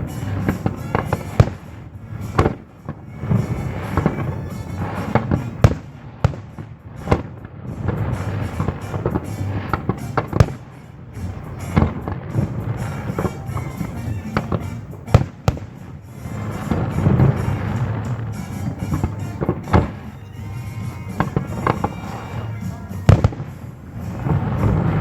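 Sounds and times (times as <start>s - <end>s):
fireworks crackling: 0.0s - 25.0s
fireworks exploding: 0.0s - 25.0s
jazz music: 0.0s - 25.0s.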